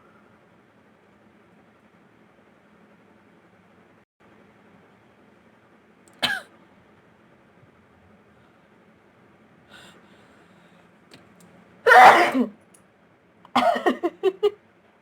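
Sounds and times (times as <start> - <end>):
woman sneezing: 11.9 - 12.6.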